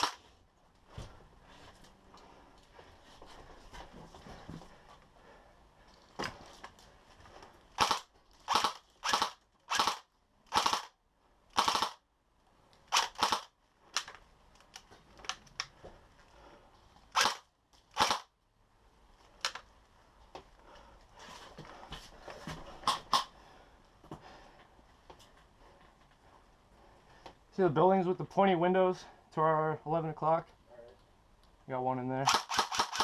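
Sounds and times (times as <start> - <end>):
airsoft guns firing bursts: 0.0 - 0.2, 7.8 - 12.0, 12.9 - 13.5, 17.2 - 18.3, 32.2 - 33.0.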